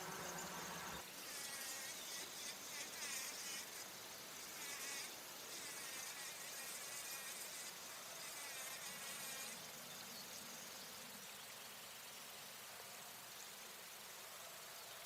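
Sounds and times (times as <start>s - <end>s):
bumblebee buzzing in flight: 0.0s - 10.0s.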